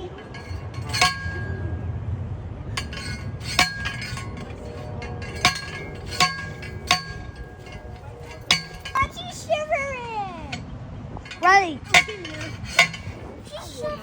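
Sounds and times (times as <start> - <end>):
metal object clinking: 0.0 - 1.7, 2.7 - 9.2, 11.2 - 14.0.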